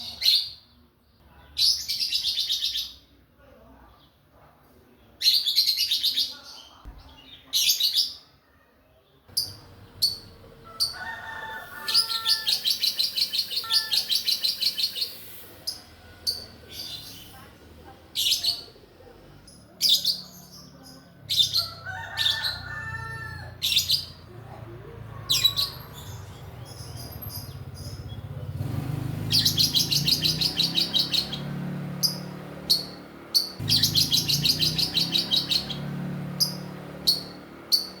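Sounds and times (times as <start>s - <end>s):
bird chirping and chattering: 9.3s - 11.1s, 11.7s - 22.7s, 23.6s - 38.0s.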